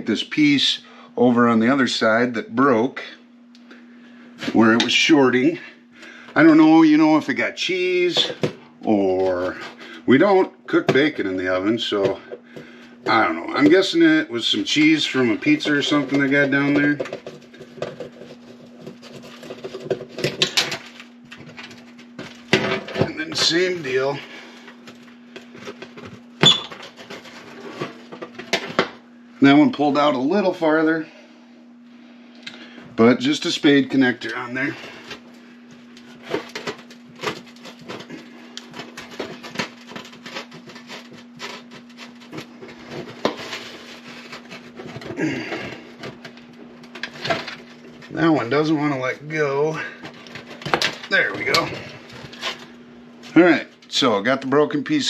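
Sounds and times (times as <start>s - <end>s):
faint steady hum: 0.0s - 55.0s
clicking and scratching of wiring: 14.8s - 22.5s, 35.0s - 45.2s.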